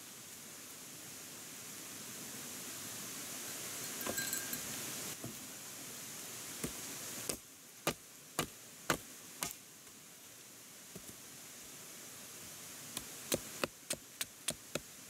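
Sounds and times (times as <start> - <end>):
light metallic clink: 3.8 - 4.7.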